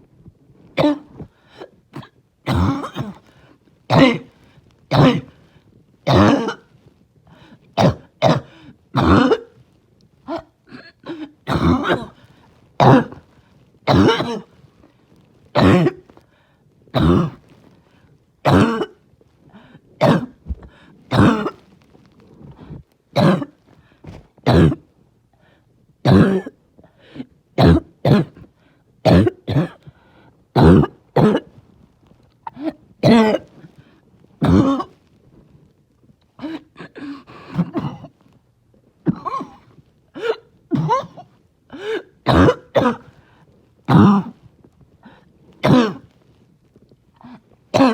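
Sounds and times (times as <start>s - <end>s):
person barking cough: 0.8s - 3.2s, 3.9s - 4.3s, 4.9s - 5.4s, 6.1s - 6.6s, 7.8s - 9.5s, 10.3s - 12.2s, 12.8s - 13.2s, 13.9s - 14.5s, 15.6s - 16.0s, 17.0s - 17.4s, 18.5s - 19.0s, 20.0s - 21.6s, 23.2s - 24.8s, 26.1s - 26.6s, 27.6s - 28.4s, 29.1s - 29.8s, 30.6s - 31.5s, 32.5s - 33.5s, 34.4s - 35.0s, 36.4s - 38.1s, 39.1s - 43.1s, 43.9s - 44.4s, 45.6s - 46.1s.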